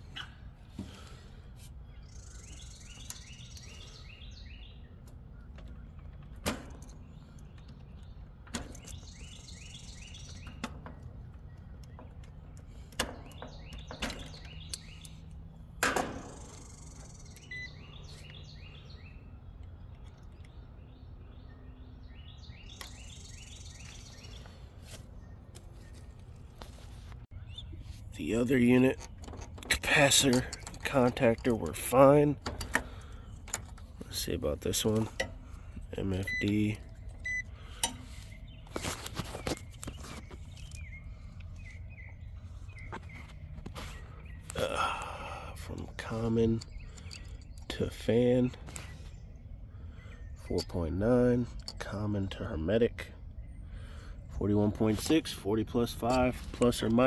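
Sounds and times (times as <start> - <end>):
outdoor background noise: 0.0 - 57.0
songbird trilling: 1.9 - 6.4, 7.0 - 15.5, 16.2 - 19.8, 20.4 - 24.6
sharp clicks and knocks: 10.2 - 17.6, 28.7 - 40.8.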